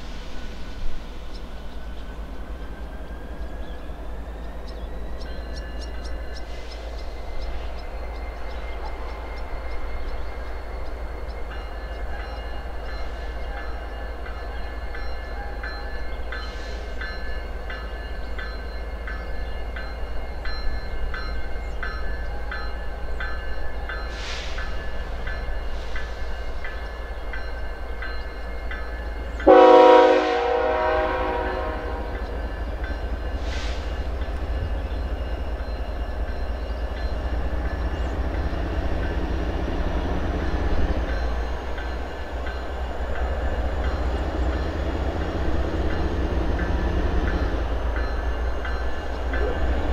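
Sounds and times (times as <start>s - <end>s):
freight train rumble and whine: 0.0s - 49.9s
train horn blast: 29.4s - 32.6s.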